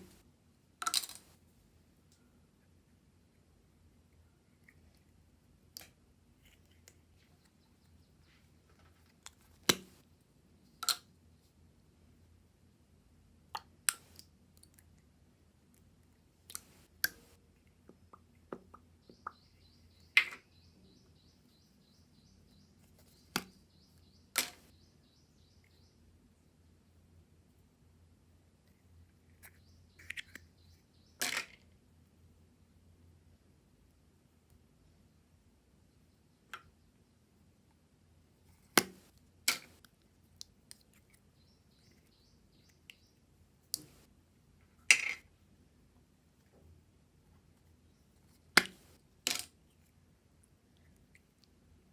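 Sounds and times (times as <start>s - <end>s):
faint high chirping: 18.0s - 27.0s, 41.2s - 44.1s.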